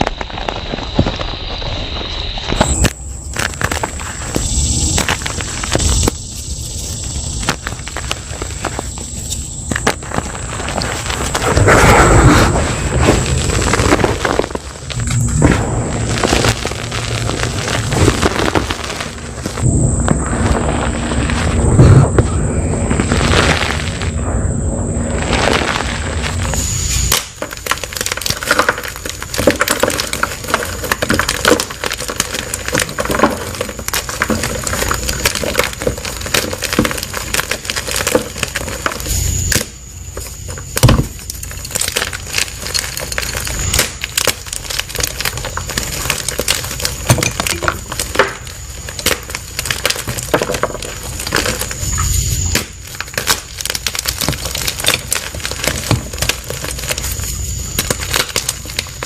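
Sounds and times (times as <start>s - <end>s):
chalk crunching and crackling: 2.6s - 21.7s.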